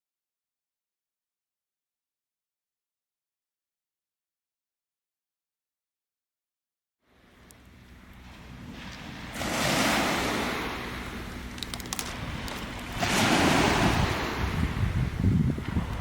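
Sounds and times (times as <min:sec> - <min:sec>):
waves breaking on beach: 0:07.1 - 0:16.0.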